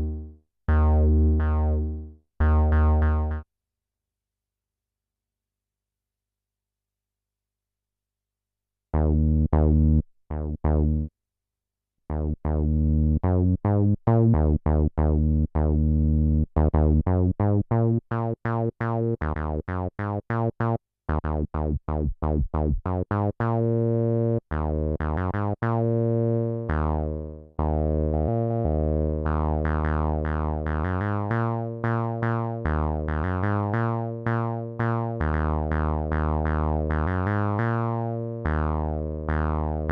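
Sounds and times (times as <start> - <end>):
synthesizer held notes with filter sweeps: 0.0 - 3.4, 20.6 - 39.9
synthesizer staccato bass line: 0.0 - 3.4, 9.0 - 11.1, 12.1 - 39.9.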